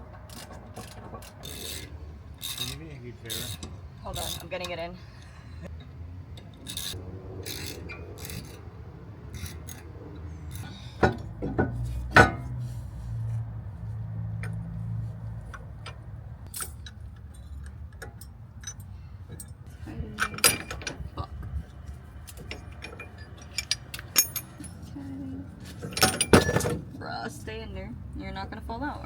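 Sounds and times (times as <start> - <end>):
sharp metal knocks: 10.6 - 12.6, 25.8 - 26.9
light metal clinks: 15.5 - 25.2.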